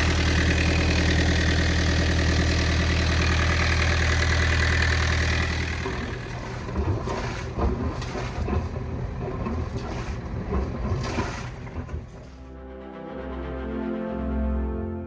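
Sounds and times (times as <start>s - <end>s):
boat engine idling: 0.0s - 12.5s
low rumbling and knocks: 5.7s - 12.4s.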